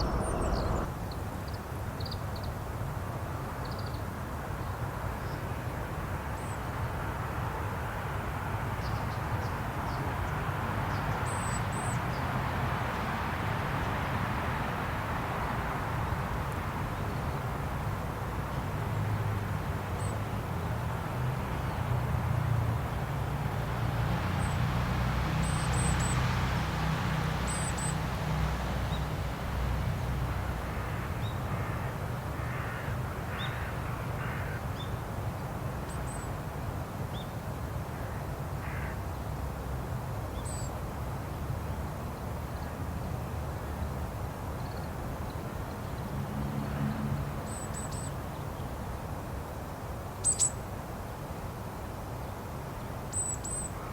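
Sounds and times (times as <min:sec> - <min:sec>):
low rumble: 0:00.0 - 0:00.9.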